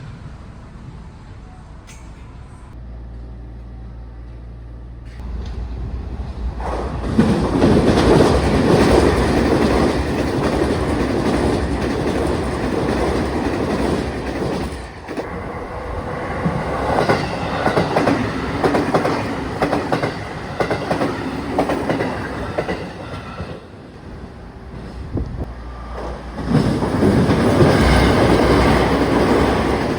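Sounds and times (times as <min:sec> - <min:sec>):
electric train running past: 0:00.0 - 0:29.9
wheels clacking over rail joints: 0:05.1 - 0:15.3.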